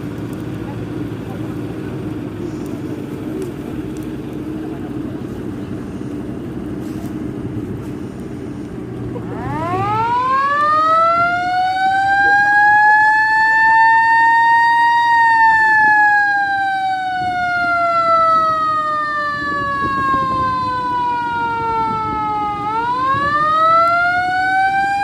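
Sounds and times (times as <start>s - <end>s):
low background rumble: 0.0s - 12.8s
siren wailing: 9.2s - 25.0s.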